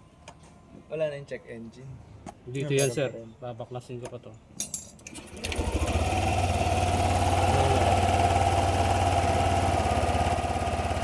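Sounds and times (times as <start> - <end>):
scooter engine starting and idling: 5.1 - 11.0.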